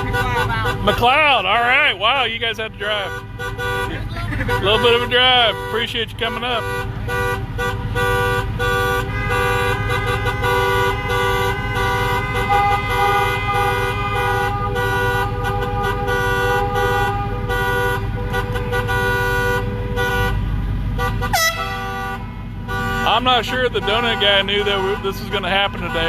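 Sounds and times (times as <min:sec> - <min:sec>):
car horns honking: 0:00.0 - 0:26.0
low rumble of slow cars: 0:00.0 - 0:26.0.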